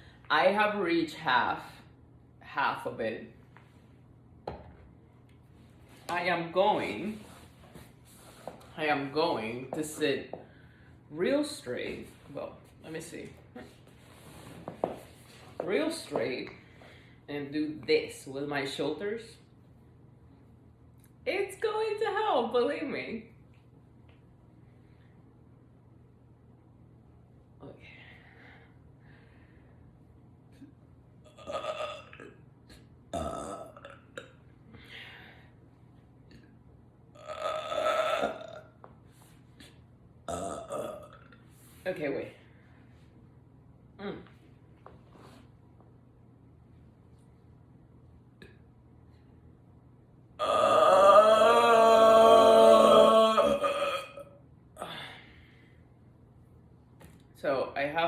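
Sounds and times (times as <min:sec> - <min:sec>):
woman belching: 0:31.3 - 0:32.4, 0:33.1 - 0:34.4, 0:37.2 - 0:38.8, 0:40.3 - 0:41.4, 0:50.4 - 0:54.4
woman burping: 0:31.3 - 0:32.4, 0:33.1 - 0:34.4, 0:37.2 - 0:38.8, 0:40.3 - 0:41.4, 0:50.4 - 0:55.2.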